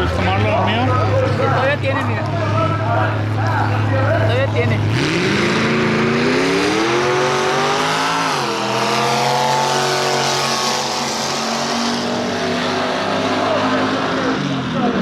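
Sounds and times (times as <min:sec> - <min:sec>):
drag racing engine revving: 0:00.0 - 0:15.0.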